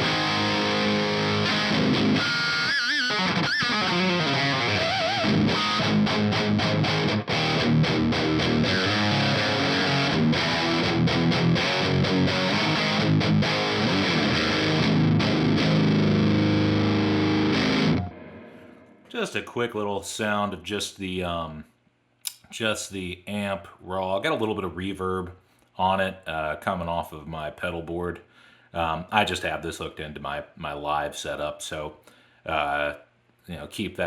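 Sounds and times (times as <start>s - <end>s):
distorted electric guitar riffs: 0.0s - 19.2s.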